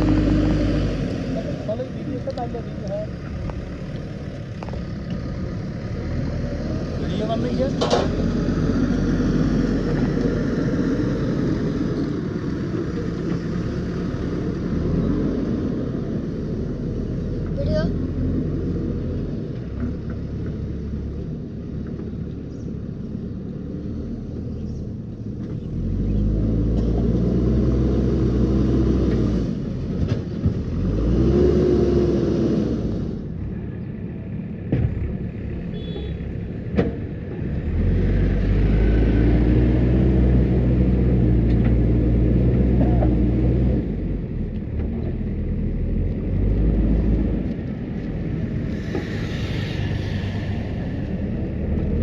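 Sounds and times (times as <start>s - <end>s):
backhoe diesel engine revving: 0.0s - 19.4s, 30.7s - 33.2s, 37.4s - 52.0s.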